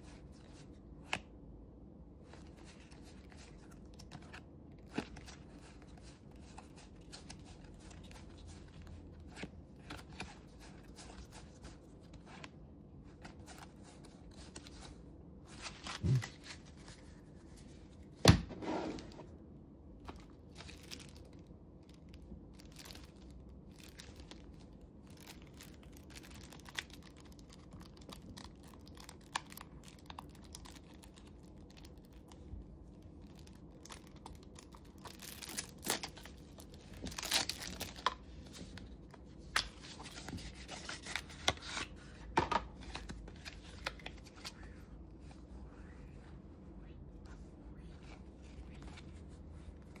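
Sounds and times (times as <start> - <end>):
packaging tearing and crinkling: 20.1 - 32.4, 33.2 - 38.2.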